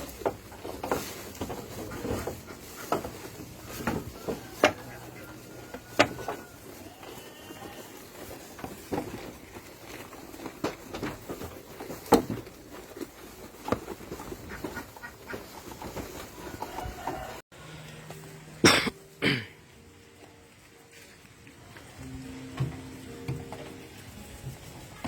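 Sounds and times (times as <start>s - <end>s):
sheep munching grass: 0.0s - 17.2s.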